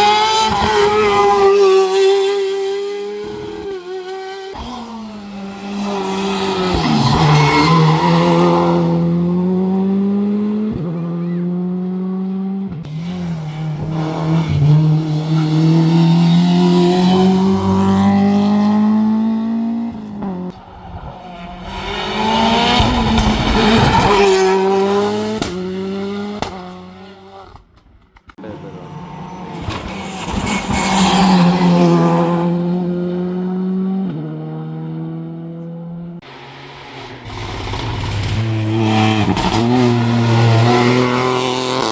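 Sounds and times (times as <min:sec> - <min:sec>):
race car engine accelerating: 0:00.0 - 0:27.7, 0:28.4 - 0:41.9.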